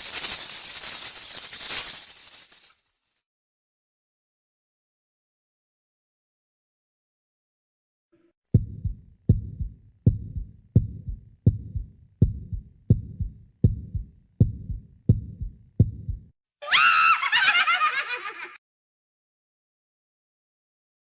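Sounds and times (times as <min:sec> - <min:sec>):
heartbeat thumps: 0:08.6 - 0:16.4
loud high wavering cry: 0:16.6 - 0:18.6.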